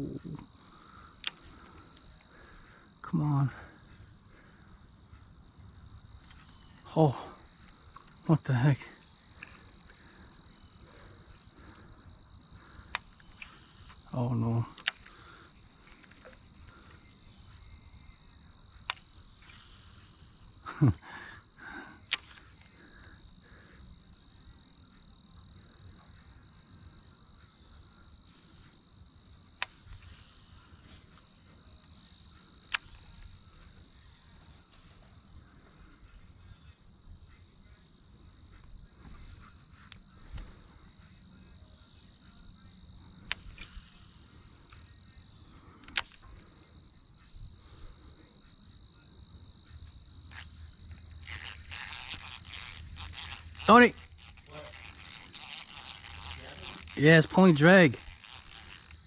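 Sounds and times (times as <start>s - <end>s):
insects chirring: 0.0s - 59.0s
sharp clicks: 14.7s - 15.2s, 45.8s - 46.3s, 51.2s - 59.0s.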